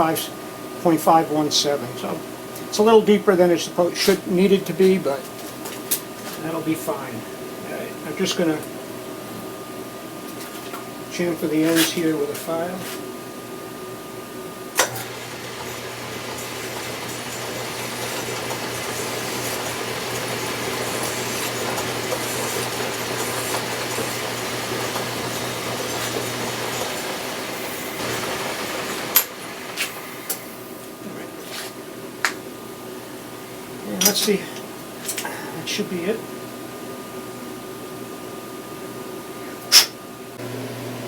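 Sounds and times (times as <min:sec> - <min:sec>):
file scraping spinning metal: 0:14.8 - 0:30.5
lathe motor humming: 0:14.8 - 0:30.9, 0:40.4 - 0:41.0.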